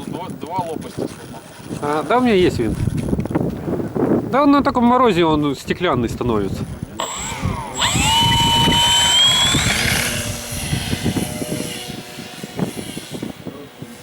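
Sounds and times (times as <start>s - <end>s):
wind buffeting microphone: 0.0s - 14.0s
model aircraft motor whining: 7.0s - 14.0s.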